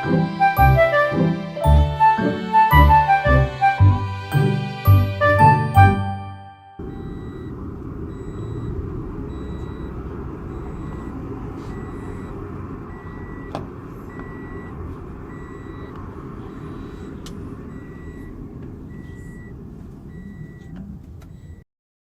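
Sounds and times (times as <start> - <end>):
electronic beeper beeping: 2.7 - 8.7
steady low rumble: 6.8 - 21.4.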